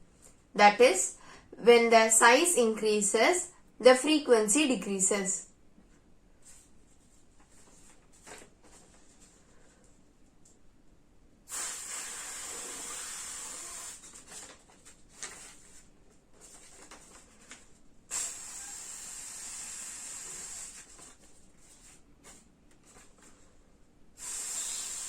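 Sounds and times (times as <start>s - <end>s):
airy breath hiss through paper: 7.4s - 10.0s, 11.5s - 25.0s.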